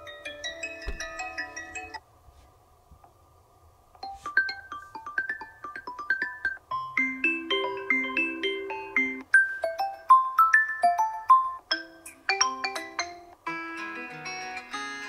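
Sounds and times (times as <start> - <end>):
chiming phone ringtone: 6.7 - 13.2.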